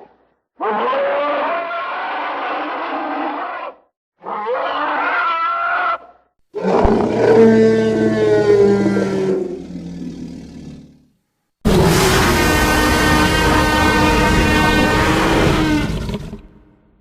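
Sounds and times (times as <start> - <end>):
dinosaur roar: 6.6 - 11.0, 11.7 - 16.8.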